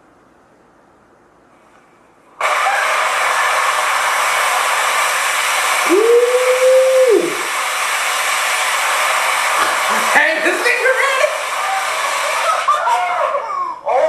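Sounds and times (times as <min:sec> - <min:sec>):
firecracker fuse hissing: 0:02.4 - 0:13.1.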